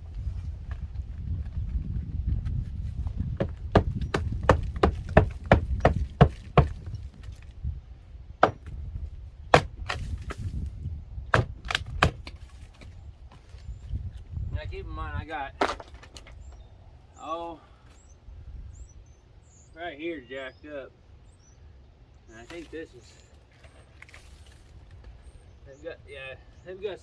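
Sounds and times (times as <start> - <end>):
hammer striking wood: 3.4 - 6.9, 8.4 - 8.7, 9.5 - 10.1, 11.3 - 12.4.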